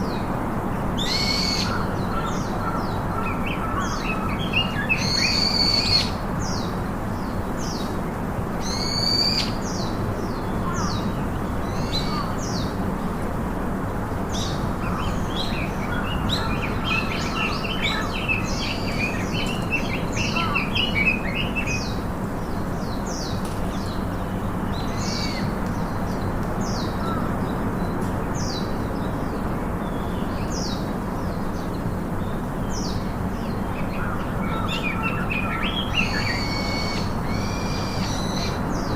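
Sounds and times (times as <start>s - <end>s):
birds chirping: 14.4s - 38.9s.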